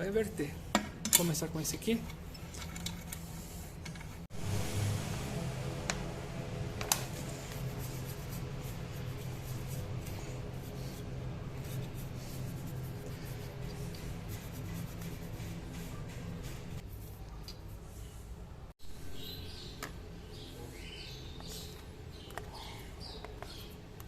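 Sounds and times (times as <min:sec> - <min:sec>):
steady low hum: 0:00.0 - 0:17.0
light scraping and handling: 0:00.3 - 0:04.3.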